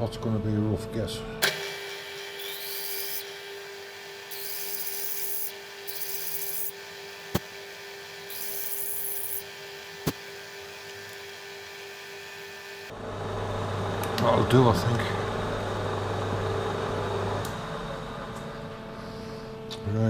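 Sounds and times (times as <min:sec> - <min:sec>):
drill bit cutting metal: 0:01.4 - 0:12.9
drilling machine humming: 0:01.4 - 0:12.9.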